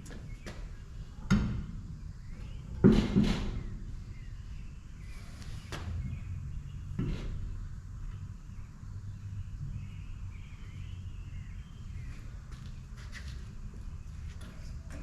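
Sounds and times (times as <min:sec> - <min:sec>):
sharp knocks: 0:02.8 - 0:03.6.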